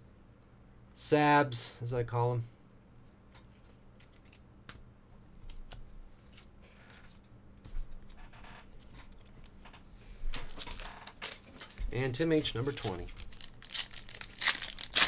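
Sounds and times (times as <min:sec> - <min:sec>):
trading cards rustling: 0:10.3 - 0:15.0.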